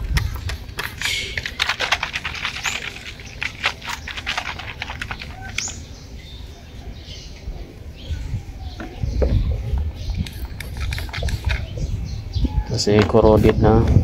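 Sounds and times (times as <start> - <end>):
scratching metal pins clean: 0.0 - 5.8.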